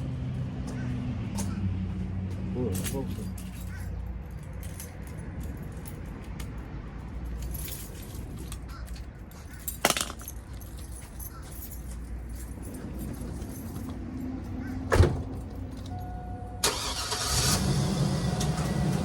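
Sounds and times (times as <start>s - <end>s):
engine running low rumble: 0.0s - 9.7s, 10.3s - 19.0s
keys jingling: 2.6s - 17.1s.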